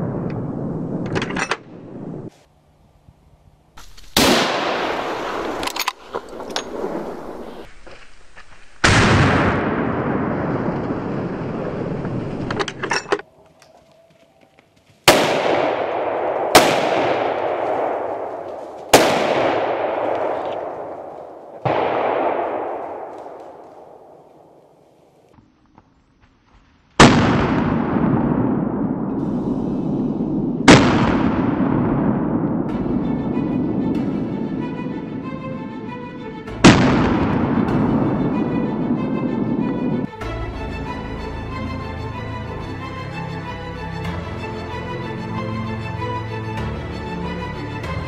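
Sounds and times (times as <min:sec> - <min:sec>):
gunshots with long echo: 0:04.1 - 0:07.7, 0:08.8 - 0:12.6, 0:15.1 - 0:25.2, 0:27.0 - 0:40.1.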